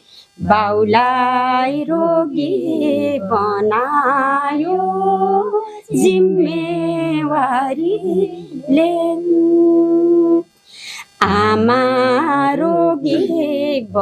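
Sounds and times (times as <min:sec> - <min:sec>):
quick breath: 0:00.0 - 0:00.4, 0:10.6 - 0:11.2
woman singing: 0:00.4 - 0:14.0.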